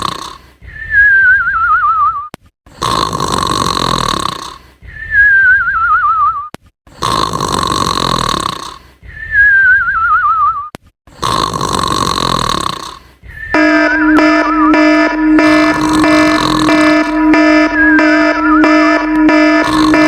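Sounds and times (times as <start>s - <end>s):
cartoon rasping snore: 0.0s - 0.6s, 2.7s - 4.7s, 6.9s - 9.2s, 11.1s - 13.2s
falling wobbly whistle: 13.4s - 20.0s
buzzy horn-like tone: 13.6s - 20.0s.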